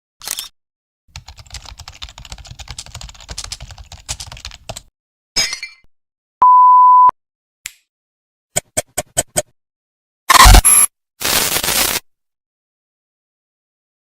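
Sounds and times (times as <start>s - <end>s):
computer keyboard typing: 1.1s - 4.9s
loud high beep: 6.4s - 7.1s, 10.3s - 10.9s.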